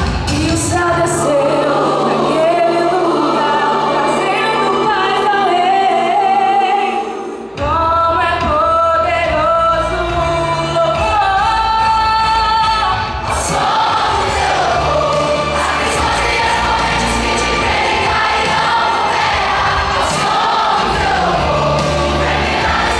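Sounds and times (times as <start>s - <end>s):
women singing gospel song: 0.6s - 7.2s, 13.3s - 22.9s
instrumental accompaniment: 13.2s - 22.9s.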